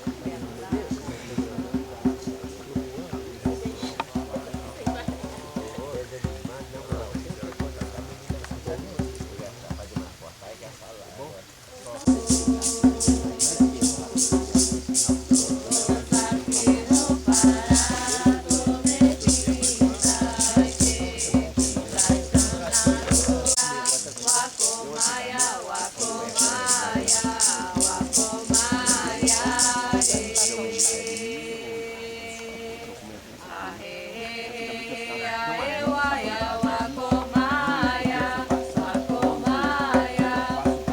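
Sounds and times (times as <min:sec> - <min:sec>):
hand rattle shaking: 0:12.0 - 0:31.4
group of voices chanting: 0:12.0 - 0:40.9
low pulsing beat: 0:12.1 - 0:23.6.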